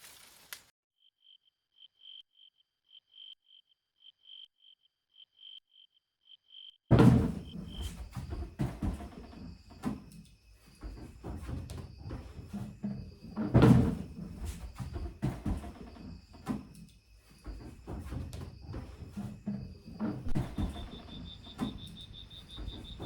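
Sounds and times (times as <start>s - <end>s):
insect chirping: 1.0s - 23.0s
knocks and thumps: 6.9s - 23.0s.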